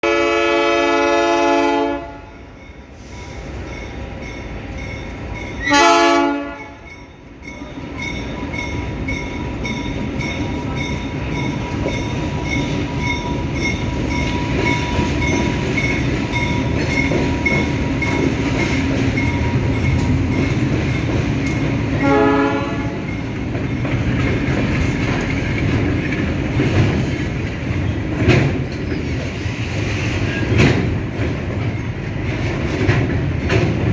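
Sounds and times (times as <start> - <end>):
locomotive horn blasts: 0.0 - 2.4, 5.6 - 6.9, 22.0 - 23.1
train rumbling past: 0.0 - 33.9
level-crossing bell dinging: 6.6 - 20.8
wheels clacking over rail joints: 7.5 - 33.9.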